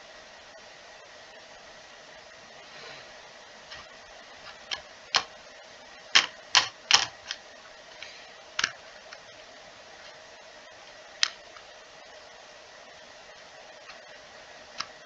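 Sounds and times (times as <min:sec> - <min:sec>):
faint steady hum: 0:00.0 - 0:15.0
floppy disk drive clicking: 0:03.6 - 0:05.4, 0:06.1 - 0:10.2, 0:10.8 - 0:11.7, 0:13.8 - 0:15.0.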